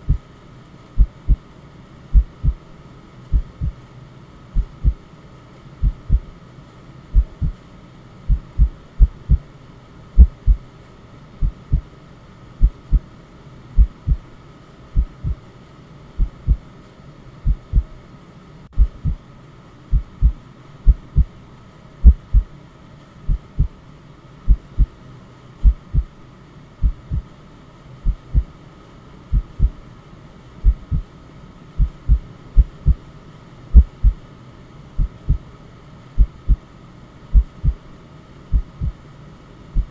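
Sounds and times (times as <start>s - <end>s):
heartbeat thumps: 0.0s - 0.3s, 1.0s - 1.4s, 2.1s - 2.6s, 3.3s - 3.8s, 4.6s - 5.0s, 5.8s - 6.3s, 7.1s - 7.6s, 8.3s - 9.4s, 10.2s - 10.6s, 11.4s - 11.9s, 12.6s - 13.0s, 13.8s - 14.3s, 15.0s - 15.4s, 16.2s - 16.6s, 17.4s - 18.0s, 18.8s - 19.2s, 19.9s - 21.3s, 22.0s - 22.5s, 23.3s - 23.8s, 24.5s - 25.0s, 25.6s - 26.1s, 26.8s - 27.3s, 28.0s - 28.5s, 29.3s - 29.8s, 30.6s - 31.1s, 31.8s - 33.0s, 33.7s - 34.2s, 35.0s - 35.4s, 36.2s - 36.6s, 37.3s - 37.8s, 38.5s - 39.0s
white noise: 0.0s - 39.9s.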